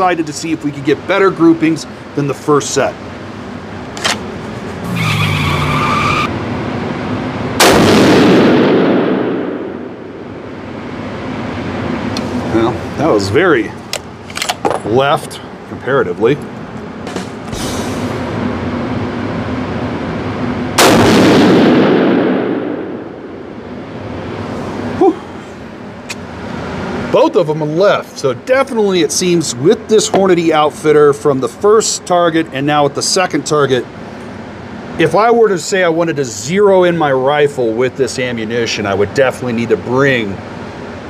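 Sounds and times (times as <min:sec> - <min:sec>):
rifle shot with echo: 0:07.6 - 0:10.0, 0:20.8 - 0:23.2.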